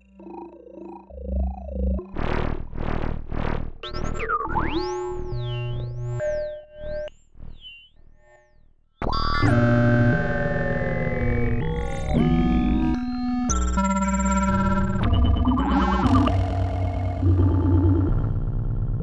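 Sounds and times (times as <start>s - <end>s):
synthesizer pulsing notes: 9.1s - 19.0s.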